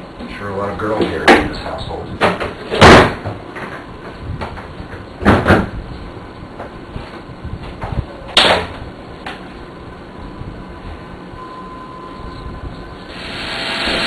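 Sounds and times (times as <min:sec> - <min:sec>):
vacuum cleaner running: 0:13.1 - 0:14.0.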